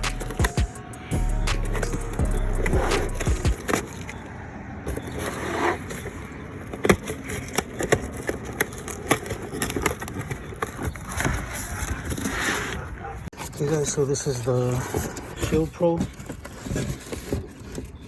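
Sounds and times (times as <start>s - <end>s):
cardboard rustling and tearing: 5.0s - 12.7s, 14.6s - 18.0s.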